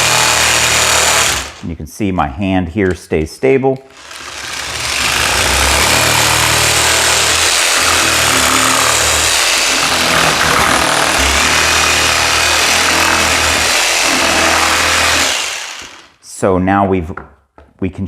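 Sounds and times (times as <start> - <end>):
oscillating multi-tool sanding: 4.0 - 16.0.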